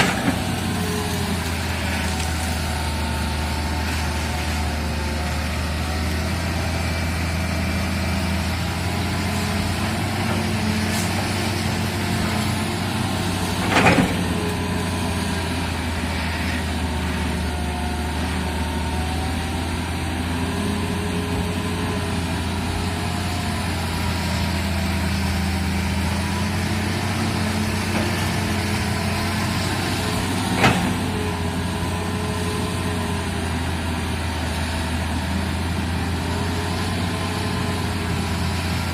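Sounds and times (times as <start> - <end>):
excavator diesel engine droning: 0.0 - 38.9.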